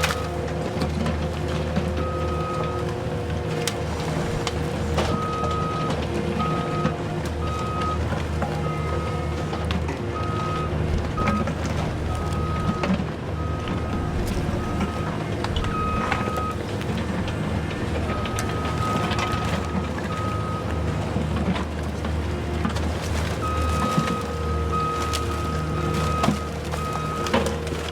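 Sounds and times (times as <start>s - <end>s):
excavator diesel engine running: 0.0s - 27.9s
warning alarm beeps: 5.1s - 16.6s, 17.5s - 21.0s, 23.4s - 27.5s.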